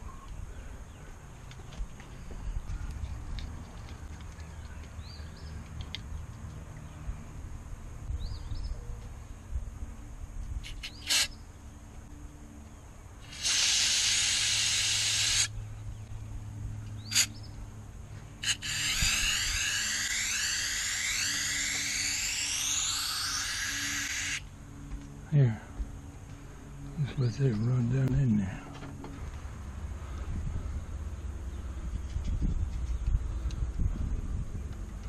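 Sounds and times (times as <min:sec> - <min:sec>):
aerosol can spraying: 0:13.2 - 0:15.5.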